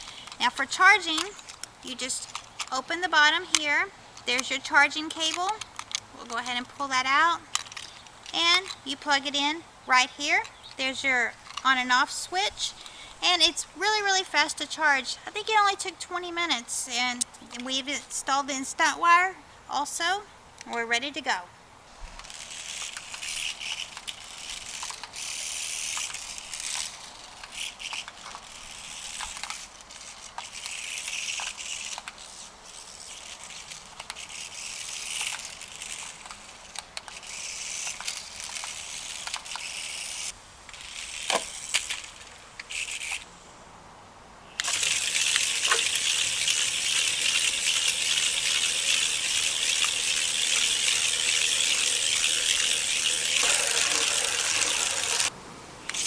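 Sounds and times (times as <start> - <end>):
rc car driving over rough ground: 0.0 - 9.4, 22.1 - 43.3, 44.6 - 55.3.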